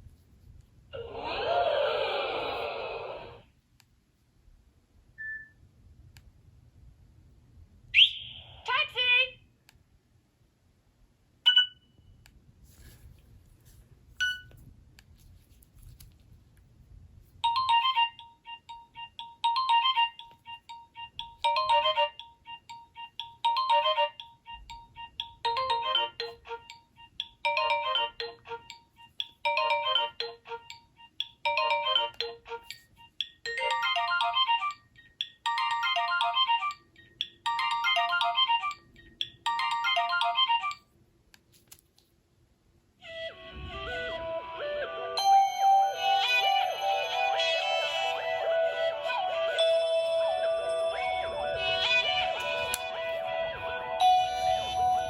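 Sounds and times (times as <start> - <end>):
synthesized ringtone melody: 11.5 - 11.8, 17.4 - 40.9, 44.5 - 55.0.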